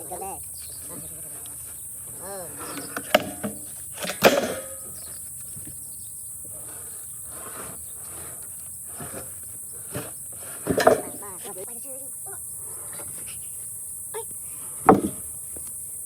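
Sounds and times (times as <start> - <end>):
insects chirring: 0.0 - 16.0
sharp knocks and clicks: 14.8 - 15.3.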